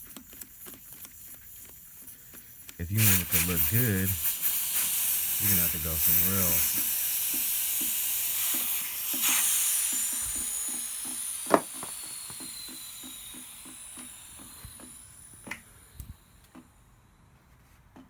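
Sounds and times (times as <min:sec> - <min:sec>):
air hissing from tire: 0:02.8 - 0:16.4.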